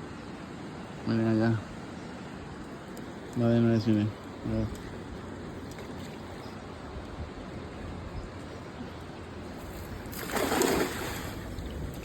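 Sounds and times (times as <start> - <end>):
river water rushing: 8.6 - 11.6
net splashing into water: 10.0 - 11.4.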